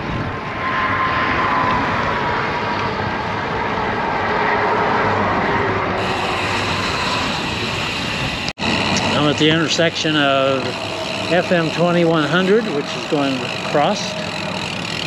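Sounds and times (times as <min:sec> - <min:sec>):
wind rushing on microphone: 0:00.0 - 0:10.8
passing road traffic: 0:00.0 - 0:15.0.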